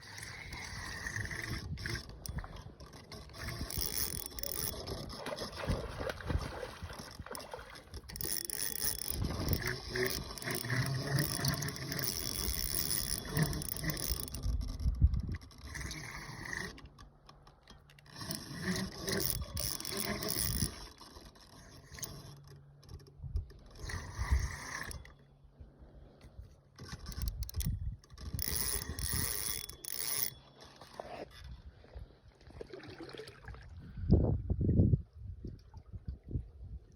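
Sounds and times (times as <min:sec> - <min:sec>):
fishing reel mechanical noise: 0:00.0 - 0:05.6, 0:06.9 - 0:25.3, 0:26.2 - 0:31.6.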